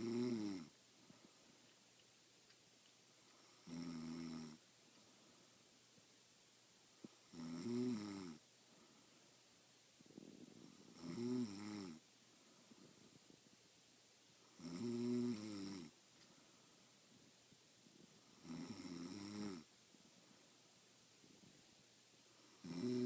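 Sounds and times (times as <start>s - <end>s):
woman snoring: 0.0s - 0.7s, 3.4s - 4.6s, 7.3s - 8.4s, 10.6s - 12.0s, 14.6s - 15.9s, 18.3s - 19.7s, 22.5s - 23.0s.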